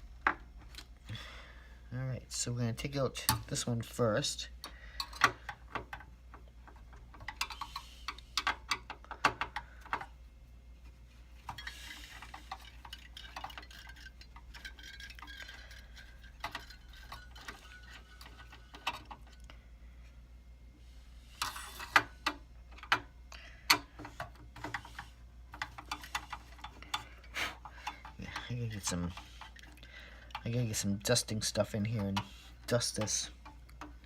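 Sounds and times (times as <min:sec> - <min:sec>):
steady low hum: 0:00.0 - 0:34.0
tool clicking and scraping metal: 0:11.5 - 0:19.4.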